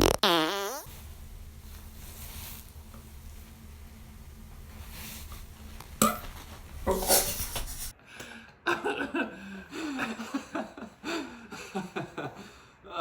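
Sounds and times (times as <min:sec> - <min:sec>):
loud buzzing fart: 0:00.0 - 0:01.0.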